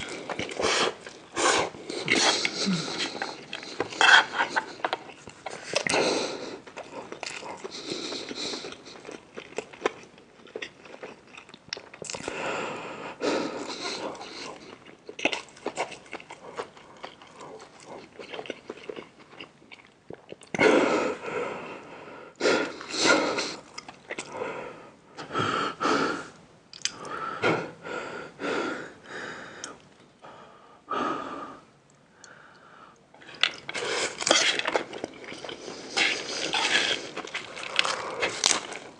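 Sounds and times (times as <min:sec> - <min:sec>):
wheezy breaths and slurps: 0:00.0 - 0:09.0, 0:33.2 - 0:38.9
person chewing food: 0:00.0 - 0:12.4, 0:13.3 - 0:20.6, 0:22.6 - 0:24.4, 0:26.7 - 0:27.1, 0:33.0 - 0:38.9.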